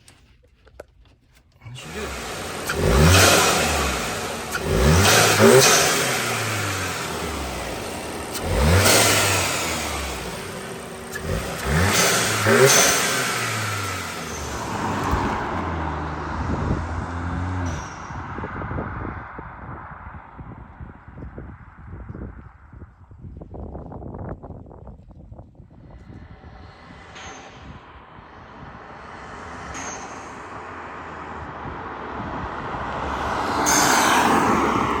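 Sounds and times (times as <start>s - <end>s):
car engine running: 1.5s - 20.4s
loud rushing sound: 2.0s - 22.0s, 25.9s - 35.0s.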